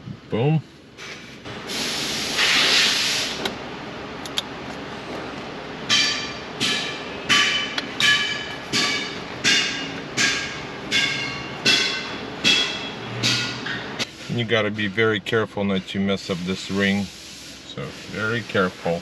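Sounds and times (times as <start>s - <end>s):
hissing noise: 1.6s - 3.5s
sharp metallic taps: 5.9s - 13.9s.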